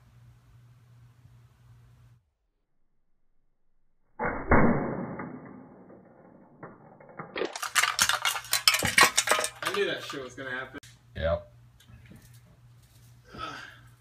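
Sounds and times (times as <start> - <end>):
metallic clattering: 6.6 - 10.4.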